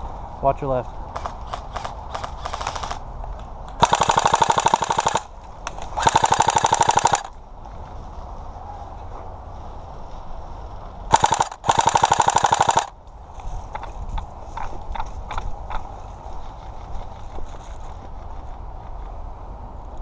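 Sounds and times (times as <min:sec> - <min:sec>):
airsoft gun shots: 0:03.8 - 0:07.3, 0:11.1 - 0:12.9
full-auto airsoft bursts: 0:03.8 - 0:07.3, 0:11.1 - 0:13.0.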